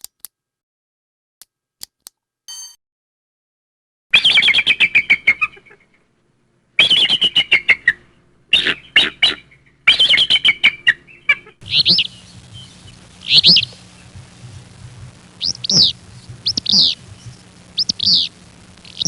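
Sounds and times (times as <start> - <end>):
bird chattering calls: 11.2 - 13.8, 15.4 - 18.3.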